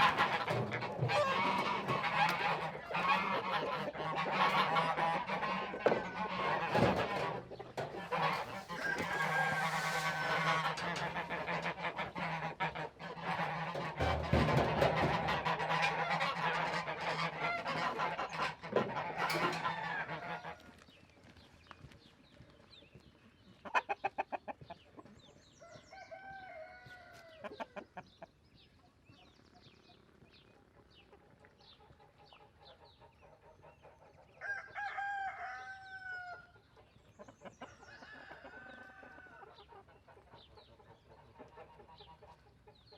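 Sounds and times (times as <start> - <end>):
chickens clucking: 0.0 - 20.8, 23.0 - 42.9
rooster crowing: 8.7 - 10.8, 34.4 - 36.5.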